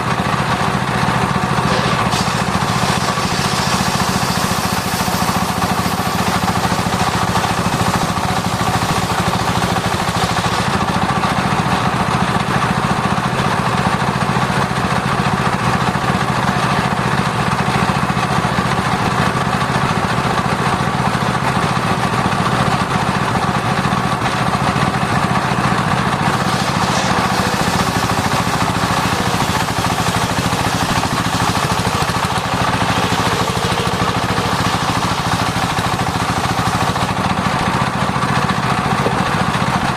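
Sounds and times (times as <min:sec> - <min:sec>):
circular sawmill droning: 0:00.0 - 0:39.9
higher hiss: 0:01.7 - 0:10.7, 0:26.3 - 0:37.2.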